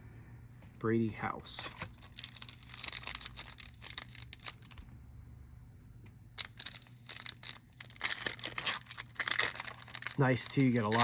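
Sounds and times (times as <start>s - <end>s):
cards being handled: 0.6s - 4.8s, 6.4s - 11.0s
foil wrapper crinkling: 1.7s - 4.8s, 6.4s - 11.0s.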